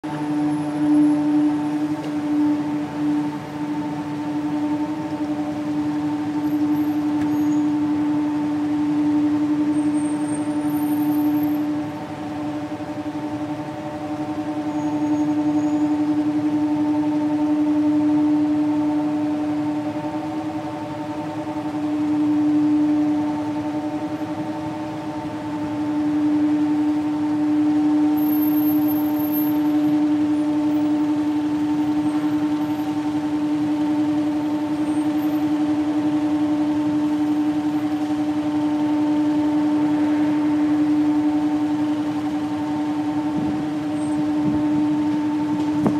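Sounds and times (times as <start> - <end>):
loud droning hum from the sky: 0.0 - 45.9.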